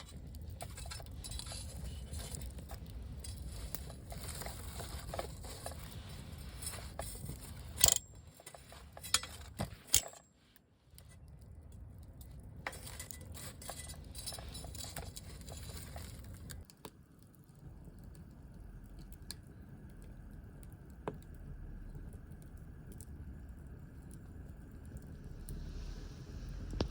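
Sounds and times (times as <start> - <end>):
firewood crackling and popping: 0.0 - 26.9
low rumble: 25.1 - 26.9.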